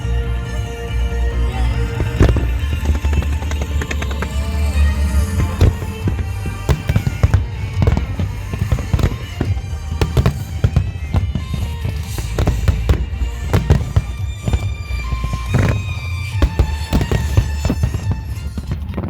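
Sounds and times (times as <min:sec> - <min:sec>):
fireworks bangs: 0:00.0 - 0:19.0
music playing: 0:00.0 - 0:19.0.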